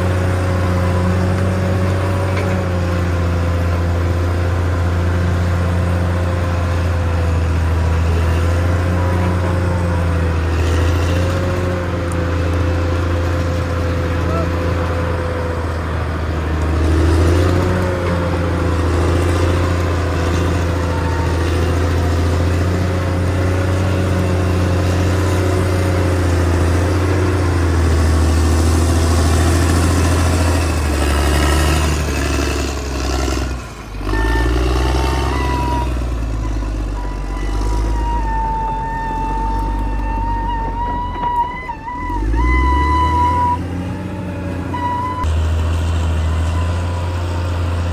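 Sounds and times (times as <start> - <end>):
bulldozer diesel engine running: 0.0 - 47.9.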